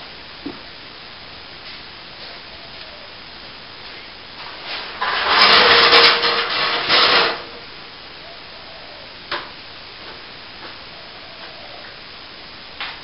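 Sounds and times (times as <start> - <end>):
rough scraping on hard material: 4.4 - 7.6.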